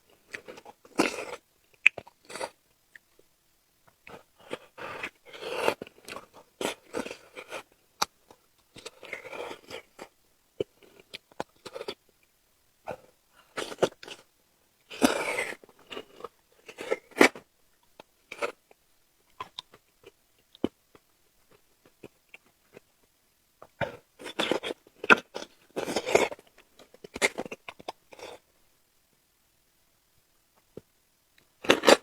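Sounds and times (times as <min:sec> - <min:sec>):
bites and chewing: 0:23.7 - 0:28.4, 0:31.6 - 0:32.0.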